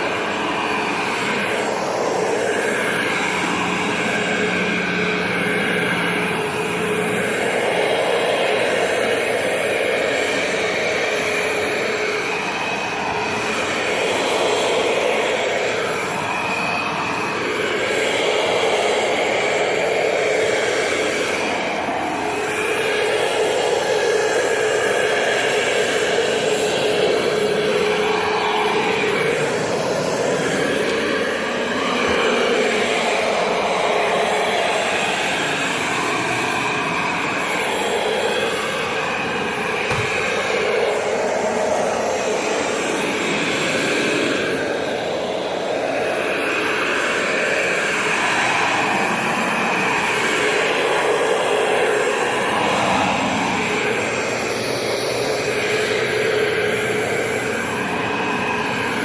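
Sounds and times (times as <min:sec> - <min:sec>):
vacuum cleaner running: 0:00.0 - 0:59.0.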